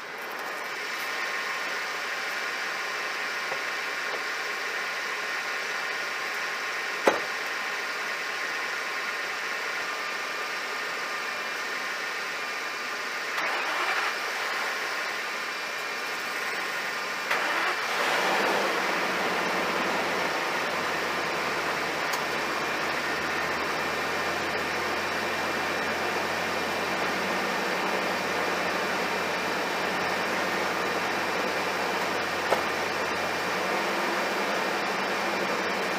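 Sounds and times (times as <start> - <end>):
engine starting and idling: 13.3 - 15.3, 16.1 - 35.9.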